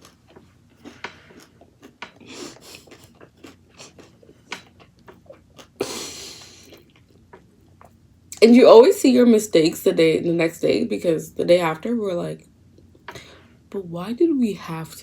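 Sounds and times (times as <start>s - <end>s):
close chewing and biting: 0.0s - 8.0s.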